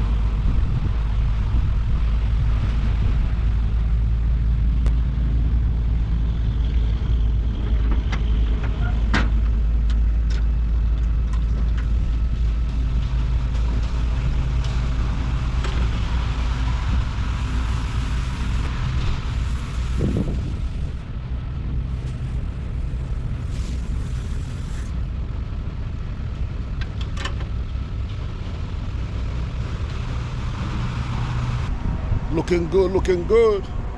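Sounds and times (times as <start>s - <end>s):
diesel engine rumbling: 0.0s - 33.9s.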